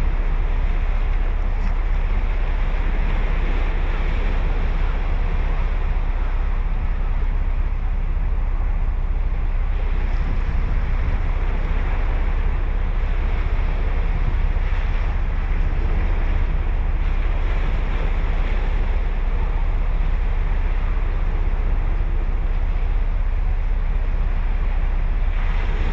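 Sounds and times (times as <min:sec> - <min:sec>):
ocean surf on beach: 0:00.0 - 0:25.9
wind rumble on microphone: 0:00.0 - 0:25.9.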